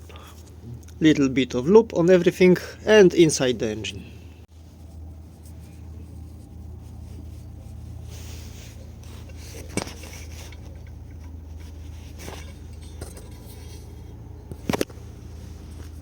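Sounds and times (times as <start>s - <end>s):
steady low hum: 0.0s - 16.0s
metal parts clinking: 12.1s - 14.6s.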